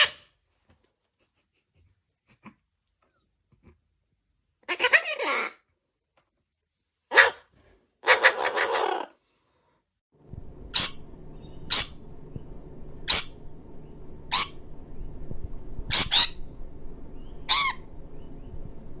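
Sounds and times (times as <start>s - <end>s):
parrot squawking: 4.6s - 5.6s, 8.0s - 9.2s, 10.7s - 15.1s, 15.8s - 16.5s, 17.2s - 18.6s.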